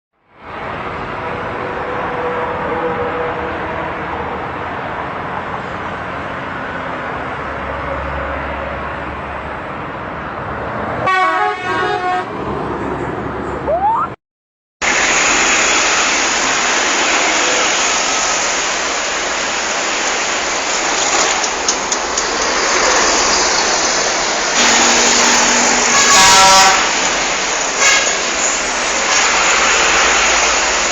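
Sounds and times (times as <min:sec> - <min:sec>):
road and traffic noise: 0:00.2 - 0:14.2, 0:14.8 - 0:30.9
multi-tone bus horn toots: 0:11.0 - 0:12.4, 0:24.6 - 0:27.1, 0:27.8 - 0:28.4.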